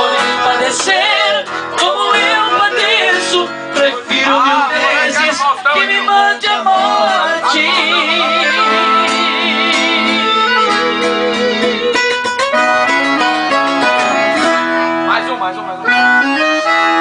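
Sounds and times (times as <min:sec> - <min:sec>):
plucked guitar: 0:00.0 - 0:17.0
wavering melody with vibrato: 0:02.0 - 0:15.2.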